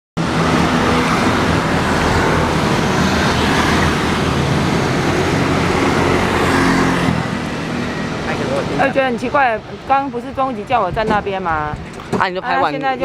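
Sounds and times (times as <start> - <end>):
aircraft engines running loud: 0.2 - 10.1.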